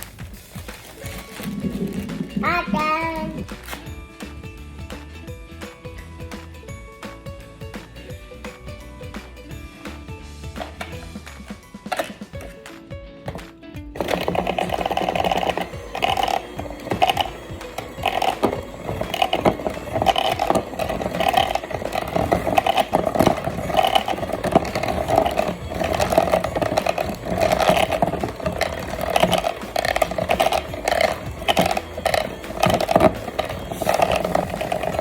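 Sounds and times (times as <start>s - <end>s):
kitchen appliance motor running: 0.8s - 4.4s, 14.0s - 35.0s.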